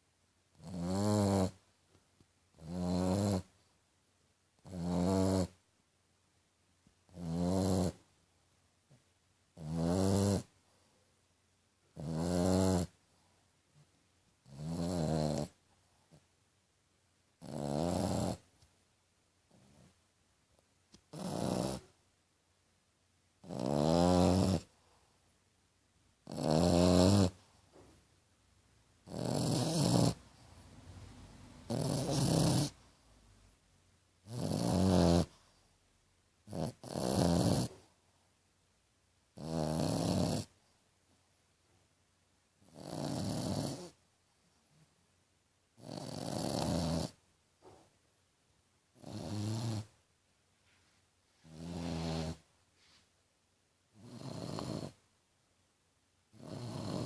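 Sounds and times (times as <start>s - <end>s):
dog snoring: 0.5s - 1.6s, 2.5s - 3.5s, 4.6s - 5.6s, 7.1s - 8.1s, 9.6s - 10.6s, 11.9s - 13.0s, 14.4s - 15.6s, 17.4s - 18.5s, 21.1s - 22.0s, 23.4s - 24.8s, 26.2s - 27.9s, 29.0s - 30.6s, 31.6s - 33.1s, 34.2s - 35.6s, 36.4s - 37.9s, 39.4s - 40.6s, 42.6s - 44.0s, 45.8s - 47.8s, 48.9s - 50.0s, 51.4s - 52.5s, 53.9s - 55.0s, 56.3s - 57.0s
dog snorting: 0.6s - 1.6s, 2.6s - 3.5s, 4.6s - 5.5s, 14.5s - 15.6s, 17.4s - 18.4s, 21.1s - 21.9s, 23.4s - 24.7s, 26.2s - 27.4s, 29.0s - 30.2s, 31.7s - 32.8s, 34.2s - 35.4s, 36.5s - 37.8s, 39.4s - 40.5s, 42.6s - 44.0s, 45.8s - 47.8s, 51.4s - 52.5s, 54.0s - 55.0s, 56.4s - 57.0s.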